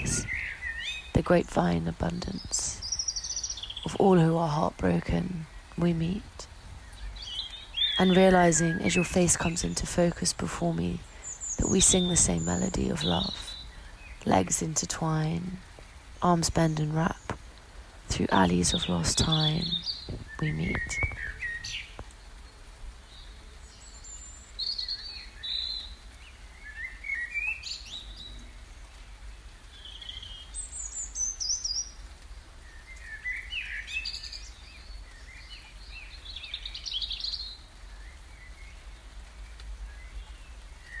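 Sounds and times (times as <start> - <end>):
birds chirping and trilling: 0.0 - 17.5, 18.1 - 22.0, 23.1 - 32.0.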